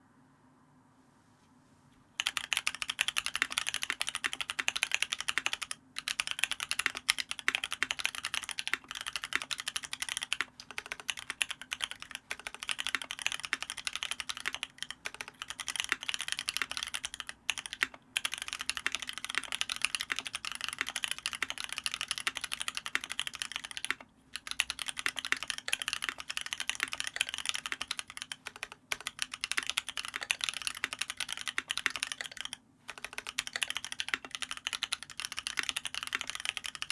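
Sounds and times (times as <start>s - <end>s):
fast typing on mechanical keyboard: 2.2s - 36.9s.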